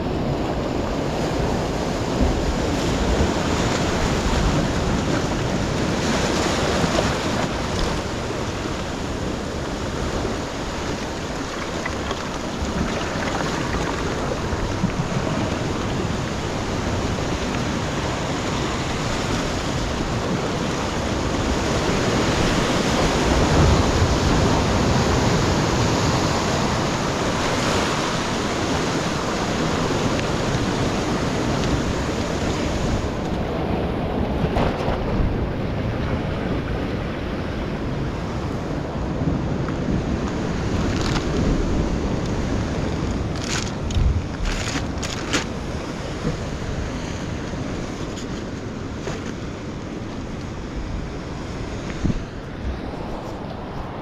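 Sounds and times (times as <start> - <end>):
surf washing against rocks: 0.0 - 54.0
wind buffeting microphone: 0.0 - 54.0.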